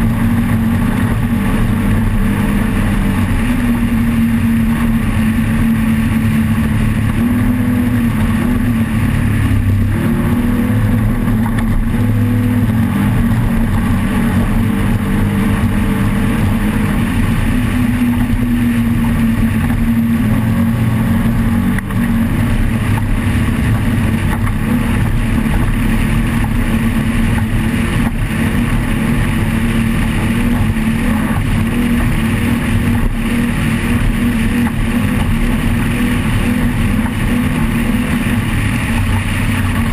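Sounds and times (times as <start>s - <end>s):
race vehicle engine droning: 0.0s - 39.9s.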